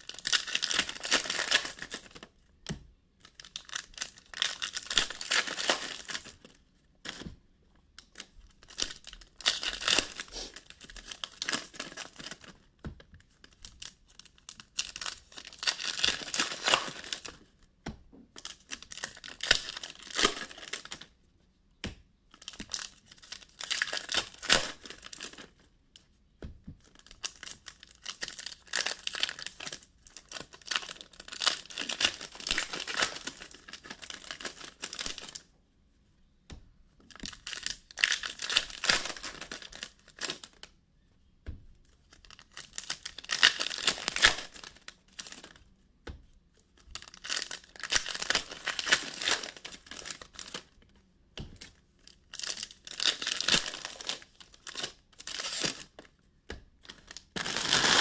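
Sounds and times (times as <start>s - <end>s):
foil wrappers tearing and crinkling: 0.0s - 2.3s, 3.2s - 7.2s, 8.0s - 12.6s, 13.4s - 17.4s, 18.4s - 21.1s, 22.3s - 25.6s, 26.8s - 35.4s, 37.1s - 40.7s, 42.1s - 45.6s, 46.8s - 50.7s, 52.0s - 56.0s, 56.8s - 58.0s.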